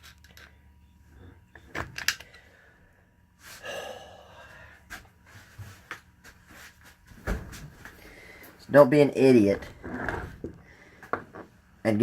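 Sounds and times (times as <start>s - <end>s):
person gasping: 3.6s - 4.9s.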